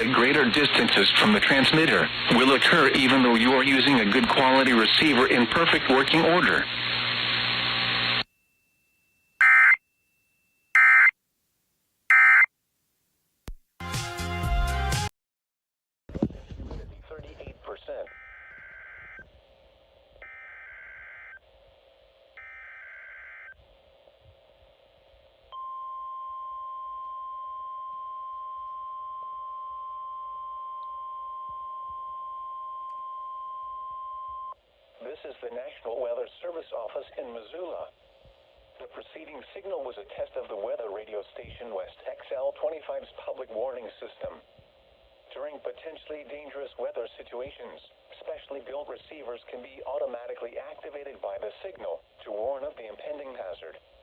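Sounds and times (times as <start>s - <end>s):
broadcast audio: 0.0s - 8.3s, 16.2s - 20.2s, 34.9s - 54.0s
steady warning alarm tone: 8.4s - 11.1s, 12.1s - 12.5s, 18.1s - 19.3s, 20.2s - 21.4s, 22.4s - 23.6s
buzzy digital data chirps: 9.4s - 9.8s, 10.8s - 11.1s, 12.1s - 12.5s.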